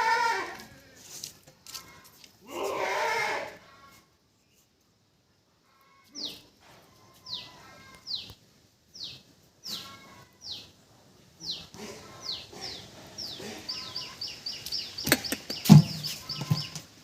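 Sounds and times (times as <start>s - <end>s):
bird calling with high slurred notes: 12.2s - 16.8s.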